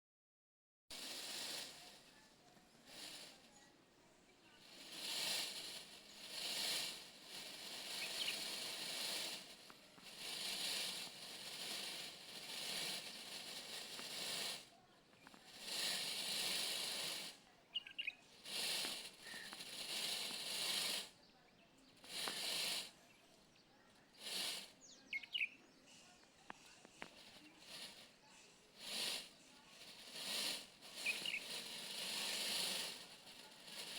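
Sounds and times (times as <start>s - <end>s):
peacock feathers rustling: 0.9s - 33.9s
faint short bird chirps: 17.7s - 18.3s, 23.0s - 26.2s, 31.0s - 31.5s.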